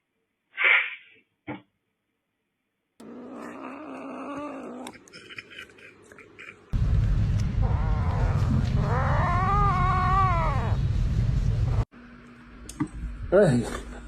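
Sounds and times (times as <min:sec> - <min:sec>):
cat crying out: 0:07.6 - 0:10.8.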